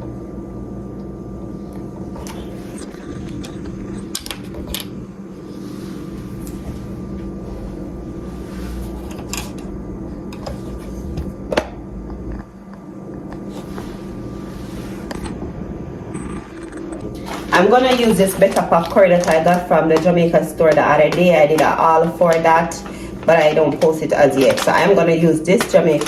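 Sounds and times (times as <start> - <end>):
kitchen fan humming: 0.0 - 26.0
containers knocking: 17.1 - 26.0.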